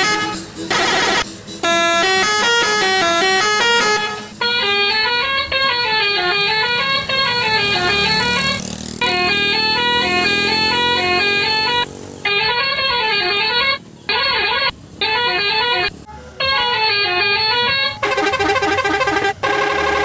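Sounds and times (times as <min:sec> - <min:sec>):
buzzy electronic tune: 0:00.0 - 0:16.0
electronic melody horn: 0:00.0 - 0:20.0.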